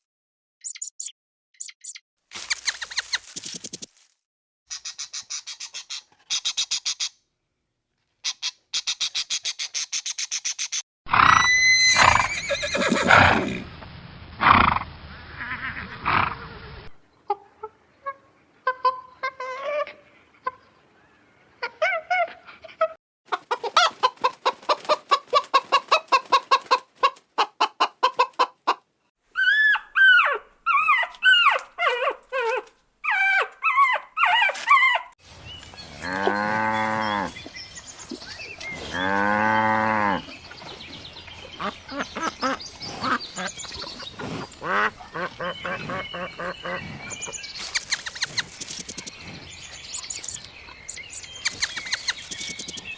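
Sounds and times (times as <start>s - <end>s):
poultry calls: 23.3s - 28.5s, 41.6s - 49.2s, 49.8s - 52.9s.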